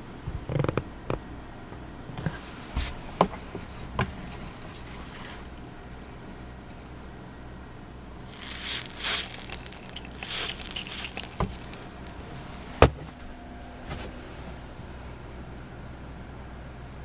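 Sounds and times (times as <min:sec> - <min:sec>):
aerosol spray hissing: 0:08.2 - 0:12.8.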